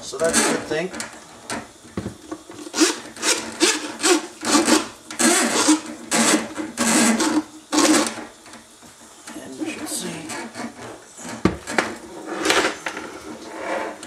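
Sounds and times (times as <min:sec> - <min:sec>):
drain auger cable scraping: 0:02.5 - 0:08.2.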